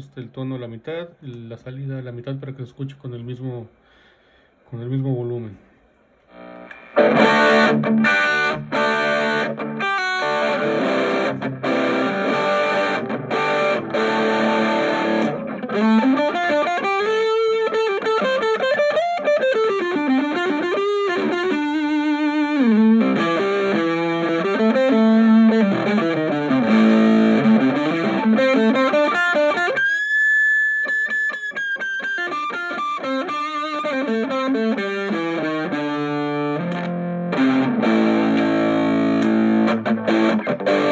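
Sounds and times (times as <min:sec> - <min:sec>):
overdriven electric guitar: 0:06.2 - 0:40.9.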